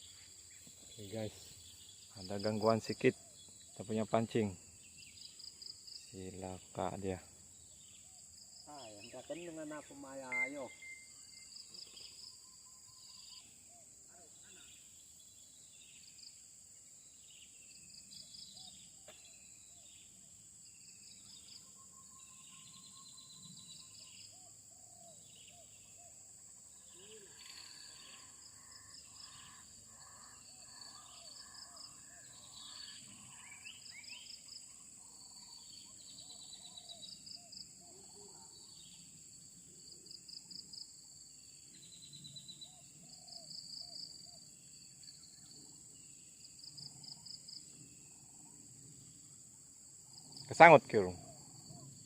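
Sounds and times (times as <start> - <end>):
birds chirping: 0.0 - 13.8
high insect drone: 0.0 - 52.0.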